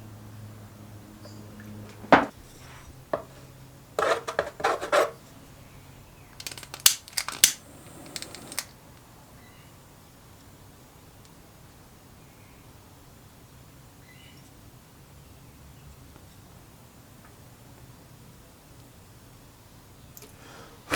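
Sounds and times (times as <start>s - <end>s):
scraping on metal: 2.0s - 5.2s
sharp clicks and knocks: 6.4s - 8.7s.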